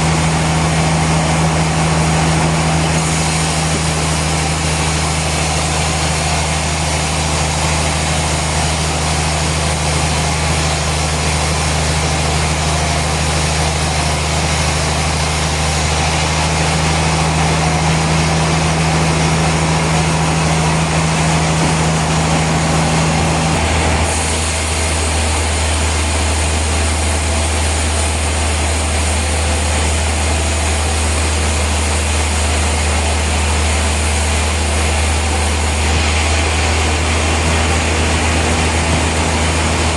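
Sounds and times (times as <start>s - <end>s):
heavy machinery humming: 0.0s - 39.9s
broad hiss: 2.1s - 9.6s, 23.9s - 32.1s.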